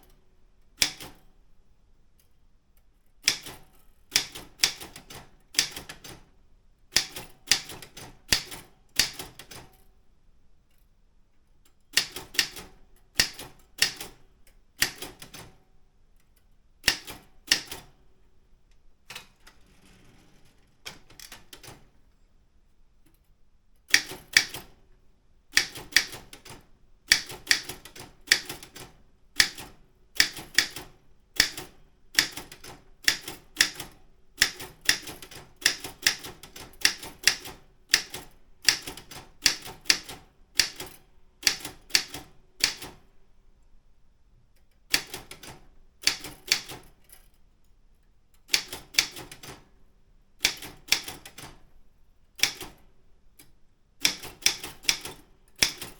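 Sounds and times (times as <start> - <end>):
typewriter key strikes: 3.2 - 6.3, 6.9 - 9.8, 11.9 - 14.2, 14.8 - 15.6, 23.9 - 24.8, 25.5 - 43.0, 44.9 - 47.2, 48.5 - 49.7, 50.4 - 51.6, 52.4 - 52.8, 54.0 - 55.9.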